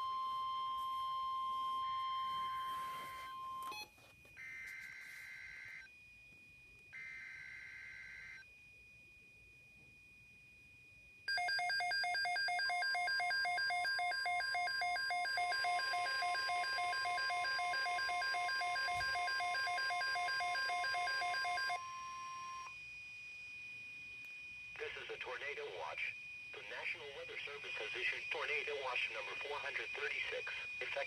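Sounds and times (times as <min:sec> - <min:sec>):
pulsing electronic alarm: 0:00.0 - 0:31.0
steady warning tone: 0:10.0 - 0:31.0.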